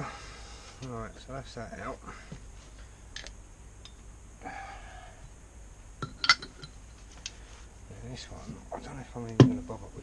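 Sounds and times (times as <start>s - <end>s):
metal tools clinking: 6.0s - 6.8s.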